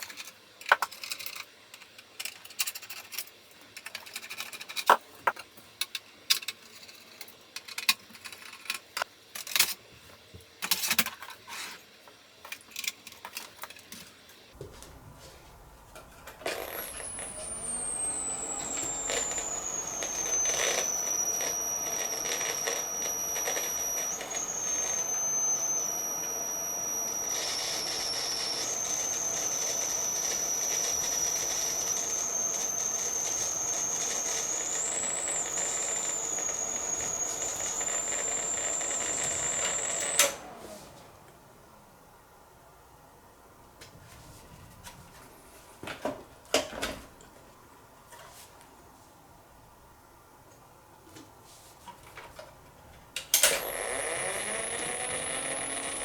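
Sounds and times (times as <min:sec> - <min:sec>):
mechanical hum: 0:00.0 - 0:56.0
computer high-pitched whine: 0:15.5 - 0:40.6, 0:53.5 - 0:56.0.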